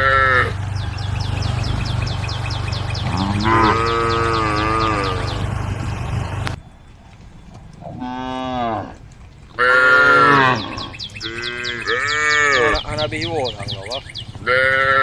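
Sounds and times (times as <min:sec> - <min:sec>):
faint rhythmic high chirping: 0:00.0 - 0:08.5
cows mooing: 0:00.0 - 0:12.8.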